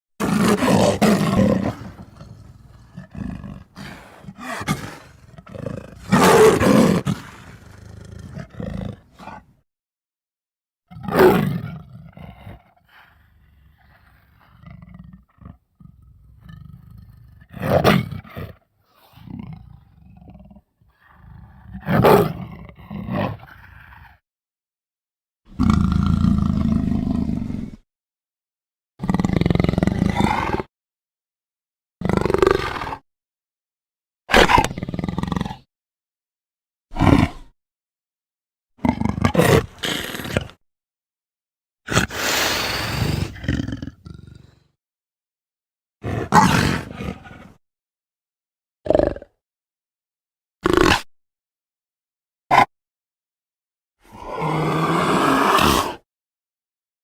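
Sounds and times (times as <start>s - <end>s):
leopard roaring: 0.2s - 9.5s, 25.5s - 27.8s, 29.0s - 30.7s, 32.0s - 33.0s, 36.9s - 37.5s, 38.8s - 40.6s, 41.9s - 44.7s, 46.0s - 47.6s, 54.0s - 56.0s.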